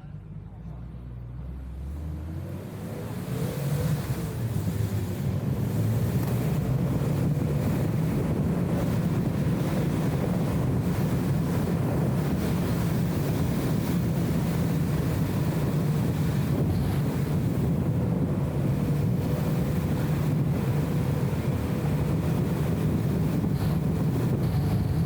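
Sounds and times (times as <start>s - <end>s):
car engine and road noise: 0.0s - 25.0s.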